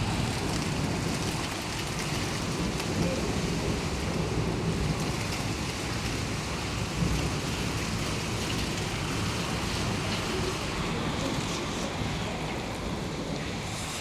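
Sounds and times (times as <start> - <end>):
heavy rain pouring: 0.0 - 14.0.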